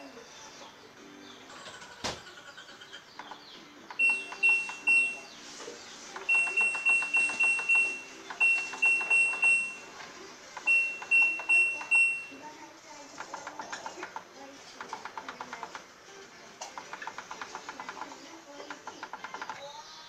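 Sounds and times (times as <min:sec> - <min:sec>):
high electronic beeps: 0:04.0 - 0:05.3, 0:06.2 - 0:09.9, 0:10.6 - 0:12.4.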